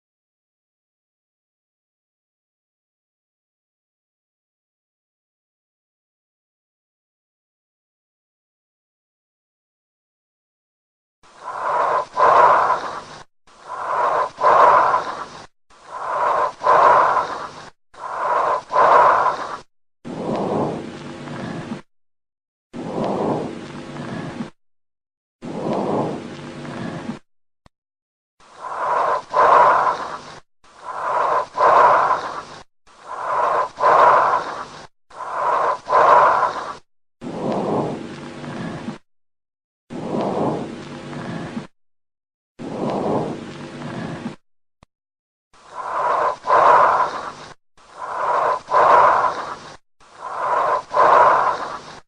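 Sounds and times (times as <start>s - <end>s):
lung breath sounds through stethoscope: 11.3s - 20.7s, 28.4s - 37.7s, 45.6s - 52.0s.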